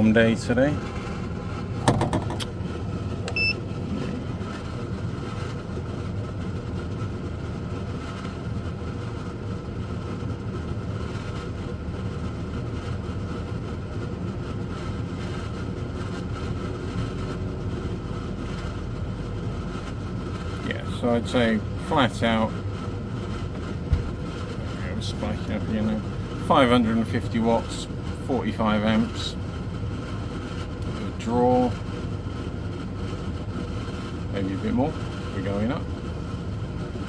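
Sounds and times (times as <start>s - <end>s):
air conditioner hum and whoosh: 0.0s - 37.0s
brief beep: 3.3s - 3.6s.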